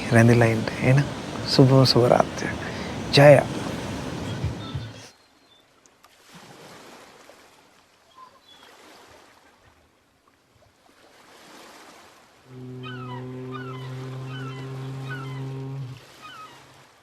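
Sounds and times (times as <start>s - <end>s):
sea waves washing on shore: 0.0s - 5.1s, 10.8s - 17.0s.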